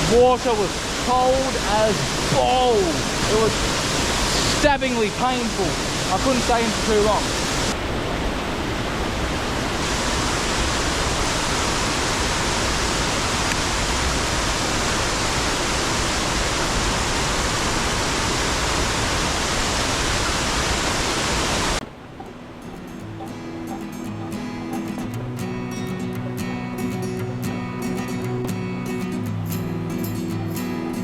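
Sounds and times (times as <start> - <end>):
waterfall rushing: 0.0 - 31.0
quiet acoustic guitar music: 22.2 - 31.0.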